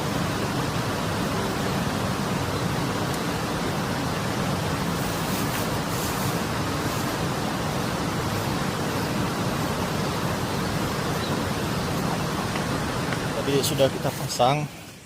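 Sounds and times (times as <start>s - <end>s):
water rushing through a dam: 0.0s - 15.0s.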